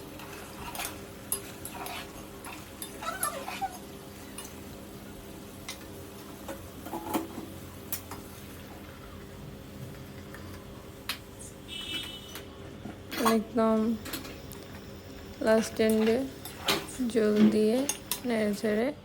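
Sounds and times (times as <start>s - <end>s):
steady low hum: 8.6s - 19.0s.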